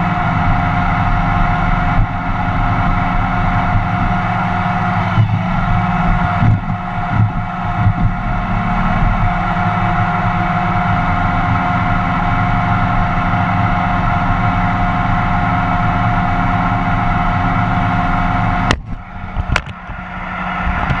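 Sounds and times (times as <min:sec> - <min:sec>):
robot vacuum motor hum: 0:03.4 - 0:13.4.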